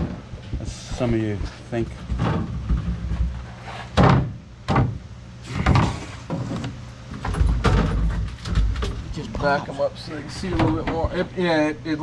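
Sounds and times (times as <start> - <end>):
knocks and bangs of parts handled: 2.0 - 5.0, 5.6 - 9.1.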